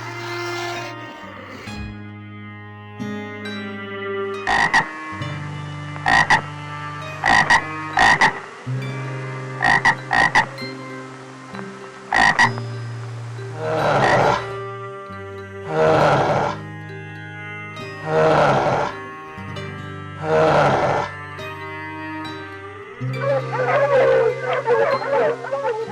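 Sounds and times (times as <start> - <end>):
frog croaking: 0.0 - 1.9, 4.5 - 4.9, 6.0 - 6.4, 7.2 - 8.5, 9.6 - 10.6, 12.1 - 12.6, 13.5 - 14.5, 15.7 - 16.6, 18.0 - 19.0, 20.2 - 21.1, 23.0 - 25.9
steady low drone: 0.0 - 3.4.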